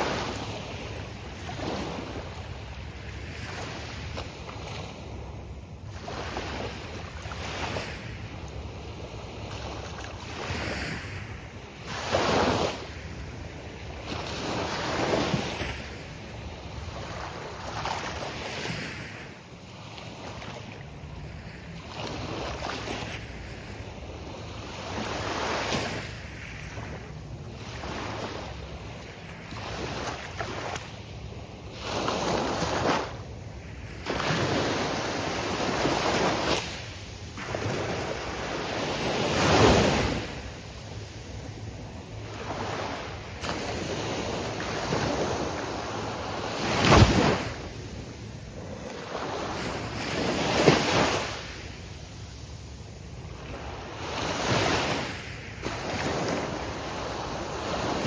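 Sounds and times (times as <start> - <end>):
surf breaking on a beach: 31.8 - 58.0.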